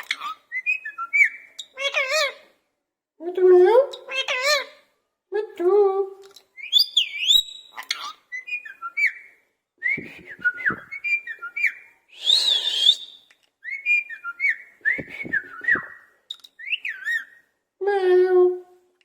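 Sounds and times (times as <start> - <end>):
parrot whistling: 10.0 - 16.0.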